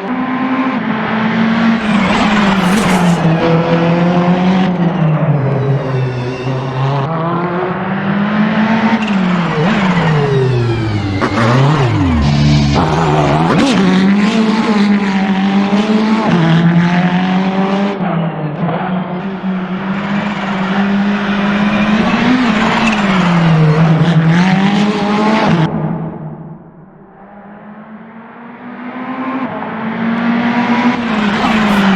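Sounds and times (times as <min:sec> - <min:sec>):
racing car engine running hard: 0:00.0 - 0:04.9, 0:18.6 - 0:25.4, 0:28.2 - 0:31.9.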